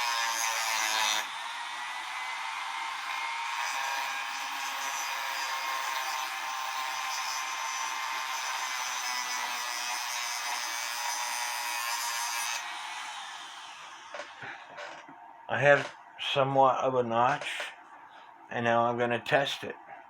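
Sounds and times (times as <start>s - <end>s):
rotary tool grinding metal: 0.0s - 1.4s, 2.0s - 15.0s.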